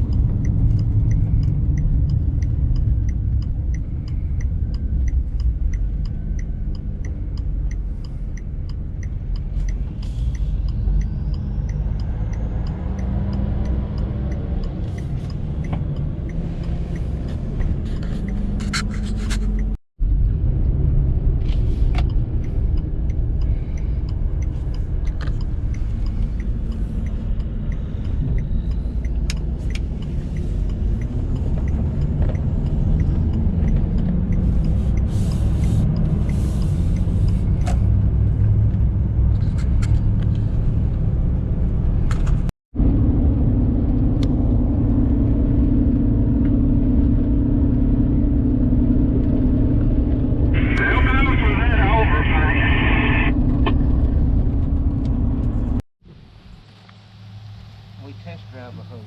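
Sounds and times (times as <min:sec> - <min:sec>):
heavy engine rumbling: 0:49.5 - 0:55.8.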